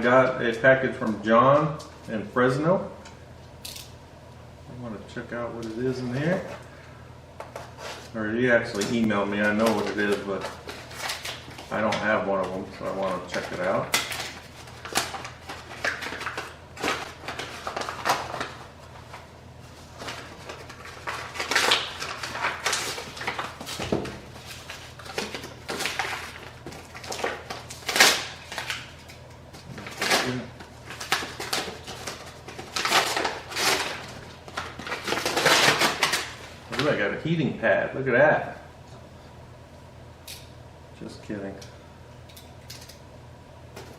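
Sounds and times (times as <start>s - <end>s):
package unpacking rustles and rips: 7.5s - 37.0s.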